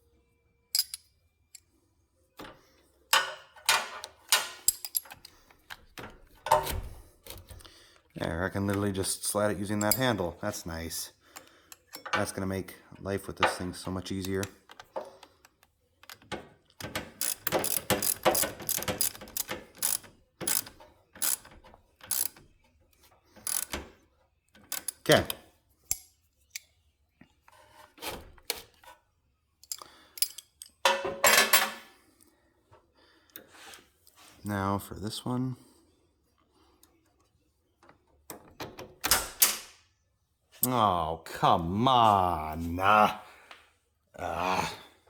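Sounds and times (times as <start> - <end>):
ratchet wrench clicking: 17.1 - 21.5, 22.1 - 22.4, 23.4 - 23.8, 24.7 - 26.0.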